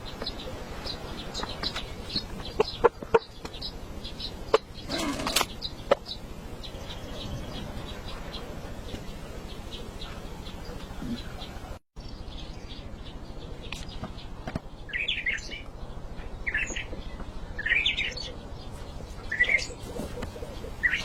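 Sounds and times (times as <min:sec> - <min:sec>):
brief rustle: 0:04.9 - 0:05.6.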